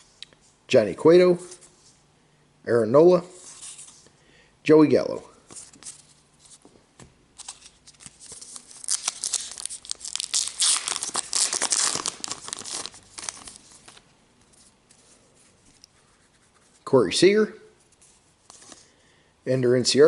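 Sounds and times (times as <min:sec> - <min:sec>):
card pack wrapper tearing: 0:07.4 - 0:14.0.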